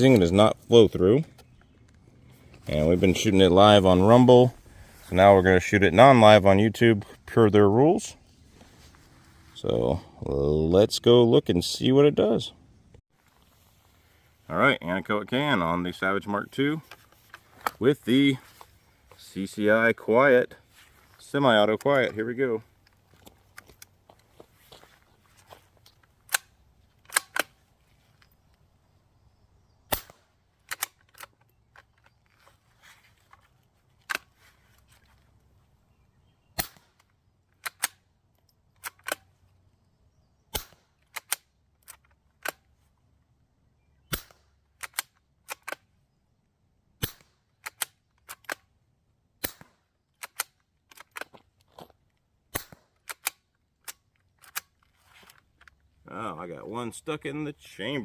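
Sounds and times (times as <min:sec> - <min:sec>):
rifle bolt clicks: 0:26.3 - 0:27.6, 0:29.9 - 0:32.0, 0:36.6 - 0:39.3, 0:40.6 - 0:42.6, 0:44.1 - 0:45.9, 0:47.0 - 0:48.7, 0:49.4 - 0:51.3, 0:52.5 - 0:54.9.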